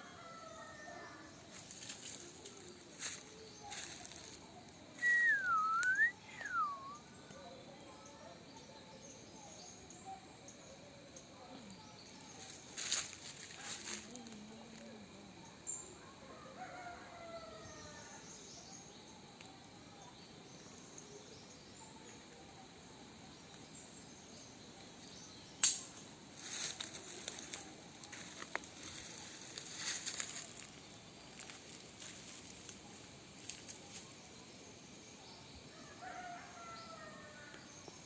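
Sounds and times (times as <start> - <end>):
faint outdoor ambience: 0.0 - 38.0
crackling and rustling: 1.4 - 4.9, 11.6 - 15.0, 25.6 - 34.3.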